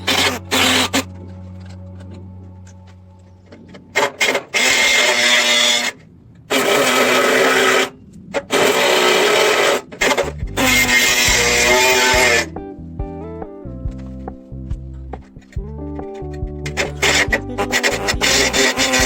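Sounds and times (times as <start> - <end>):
power tool grinding sheet metal: 0.0 - 1.1, 4.0 - 12.5, 16.7 - 19.0.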